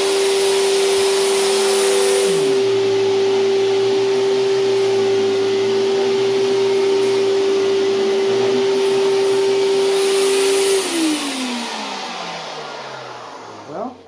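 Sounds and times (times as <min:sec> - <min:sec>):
vacuum cleaner running: 0:00.0 - 0:14.0
vacuum motor spinning down: 0:00.0 - 0:14.0.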